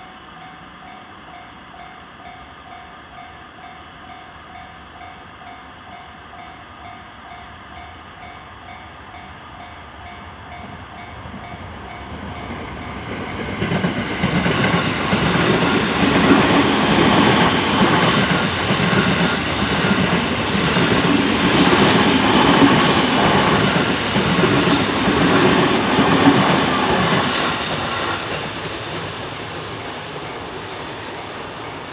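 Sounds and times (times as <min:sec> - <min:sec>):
level-crossing warning bell: 0:00.0 - 0:12.6
train passing: 0:00.0 - 0:31.9.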